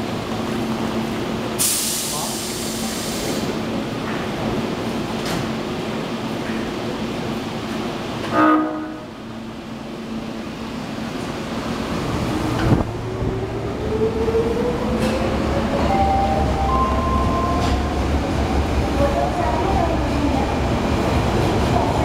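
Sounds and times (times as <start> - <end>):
train horn blast: 8.2 - 9.2.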